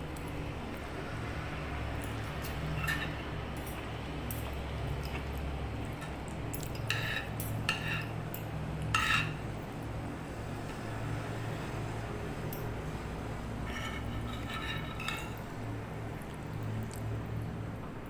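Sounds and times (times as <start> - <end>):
cutlery clinking on a plate: 2.4 - 3.8, 6.0 - 8.1, 8.9 - 9.4, 13.7 - 15.4.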